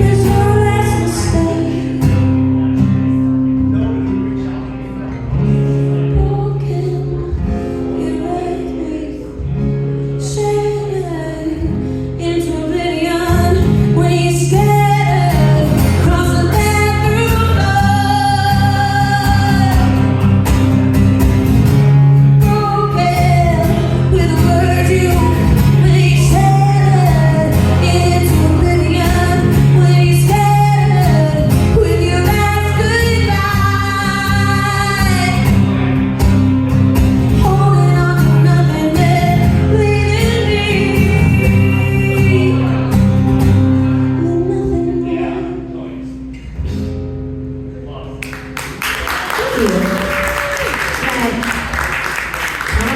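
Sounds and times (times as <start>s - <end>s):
woman singing: 0.0s - 2.4s, 6.0s - 20.2s, 22.2s - 35.8s, 37.3s - 45.5s
guitar accompaniment: 0.0s - 52.9s.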